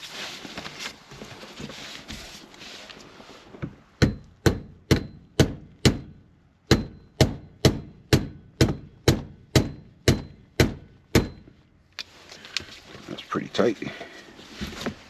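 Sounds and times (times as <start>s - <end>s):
hammer striking: 4.0s - 11.5s.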